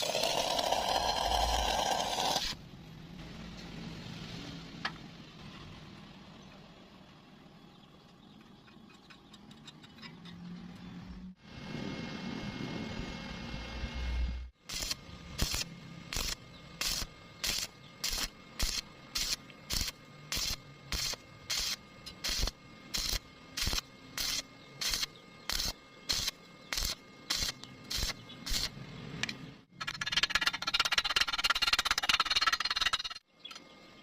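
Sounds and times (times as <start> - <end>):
welding arc crackling: 14.6 - 28.8.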